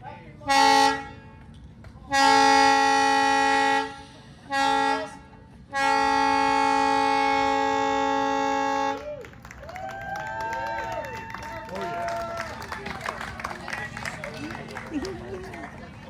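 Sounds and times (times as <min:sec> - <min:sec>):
air horn blasts: 0:00.4 - 0:01.4, 0:02.1 - 0:09.1.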